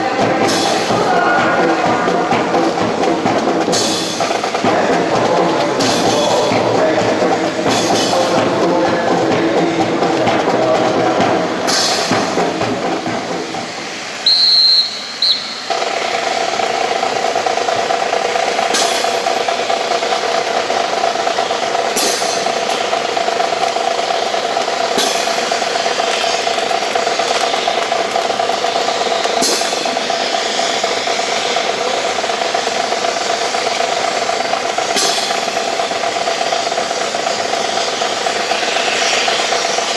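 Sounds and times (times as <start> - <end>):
steady mechanical hum: 0.0 - 39.9
sharp clack of drill rifles: 0.2 - 12.5, 14.3 - 39.9
high whistle blast: 14.2 - 15.7.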